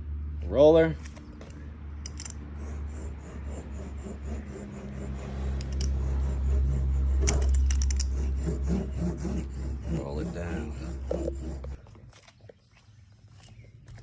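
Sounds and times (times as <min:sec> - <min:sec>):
steady low hum: 0:00.0 - 0:11.9
mat rubbing and scraping: 0:02.6 - 0:12.4.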